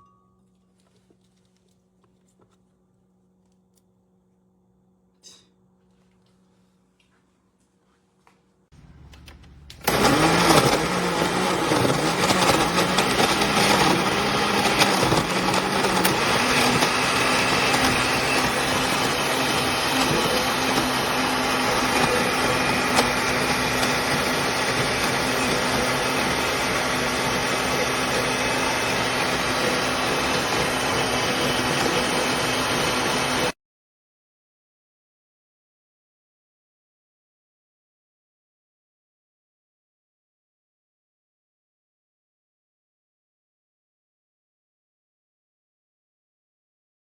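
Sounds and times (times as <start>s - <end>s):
blender running at high speed: 9.8s - 33.6s.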